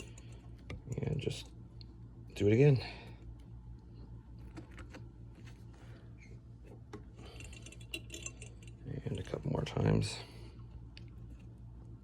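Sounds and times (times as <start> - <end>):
steady low hum: 0.0 - 12.0
metal wire clicks and scrapes: 7.2 - 8.8.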